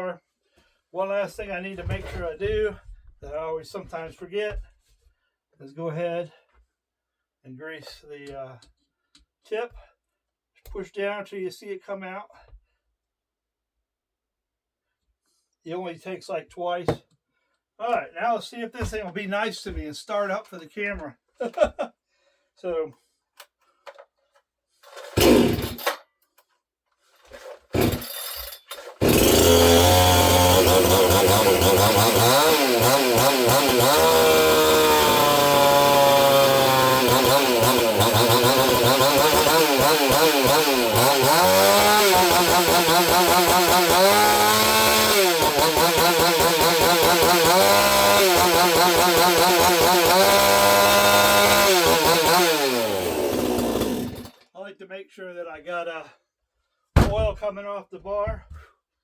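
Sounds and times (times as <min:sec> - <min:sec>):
chainsaw pull-start: 0:24.8 - 0:26.1, 0:27.0 - 0:54.5
chainsaw revving and idling: 0:25.0 - 0:26.0, 0:27.7 - 0:54.4.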